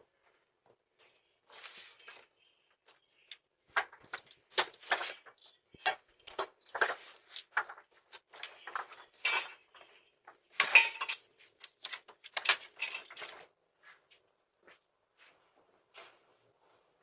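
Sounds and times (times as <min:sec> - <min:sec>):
hard objects clattering: 0:03.7 - 0:13.5.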